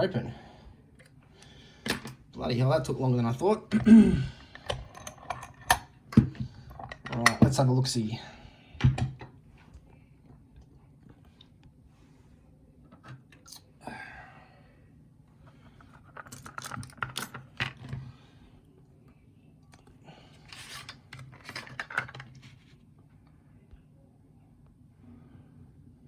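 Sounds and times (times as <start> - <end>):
small metal clicks and rattles: 15.8 - 17.9
metal scrape: 20.5 - 21.0.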